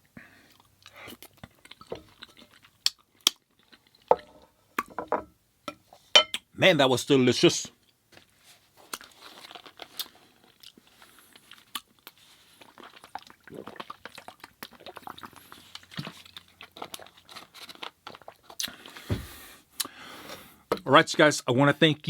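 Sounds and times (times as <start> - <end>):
person chewing with mouth clicks: 0.5 - 4.1, 8.8 - 19.1.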